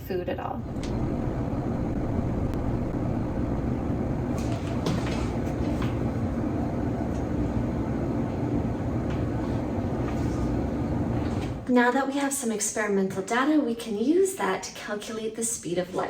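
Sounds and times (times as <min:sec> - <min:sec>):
low mechanical hum: 0:00.0 - 0:12.3.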